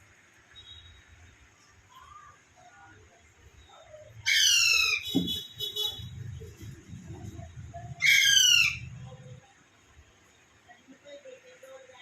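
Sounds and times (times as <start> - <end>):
parrot screeching: 4.2 - 5.1, 8.0 - 9.0
parrot buzzy chatter: 5.9 - 9.2.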